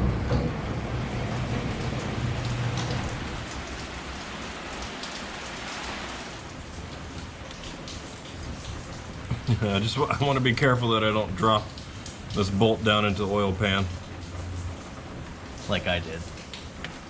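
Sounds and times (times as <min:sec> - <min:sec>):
low rumble: 0:00.0 - 0:05.0
heavy rain falling: 0:00.0 - 0:17.0.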